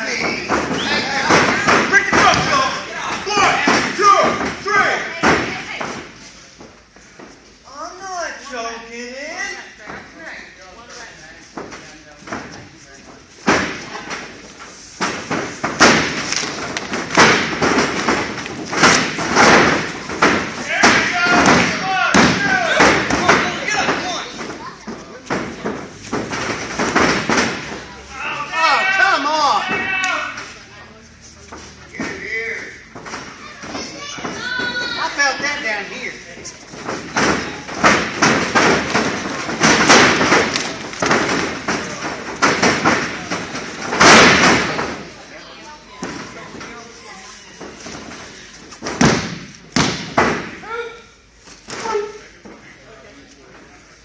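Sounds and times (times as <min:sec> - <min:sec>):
bodies slamming on ring canvas: 0:00.0 - 0:06.2, 0:13.4 - 0:14.3, 0:15.0 - 0:27.9, 0:36.7 - 0:45.2, 0:47.6 - 0:50.8
bodies slamming on wrestling ring: 0:36.9 - 0:45.0, 0:48.9 - 0:50.6.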